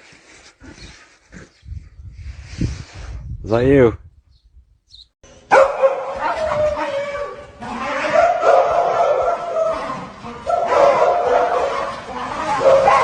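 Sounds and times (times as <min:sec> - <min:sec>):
dog howling: 0:05.9 - 0:13.0.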